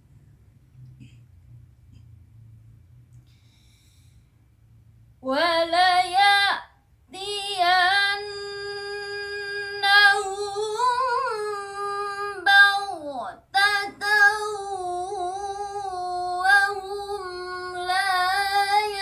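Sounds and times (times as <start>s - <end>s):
girl chanting melodically: 5.2s - 19.0s.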